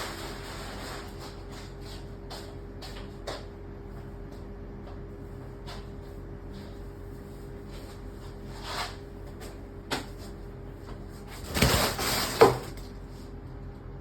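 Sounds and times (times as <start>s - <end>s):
rustling and scraping: 0.0s - 3.0s, 5.7s - 13.3s
steady low hum: 0.0s - 14.0s.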